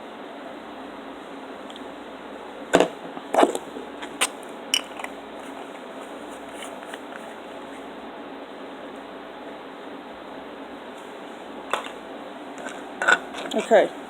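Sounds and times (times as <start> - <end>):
steady low hiss: 0.0 - 14.0.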